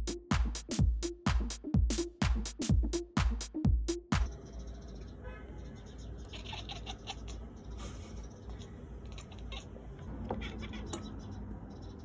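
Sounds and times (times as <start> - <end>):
cat scratching: 5.7 - 11.6.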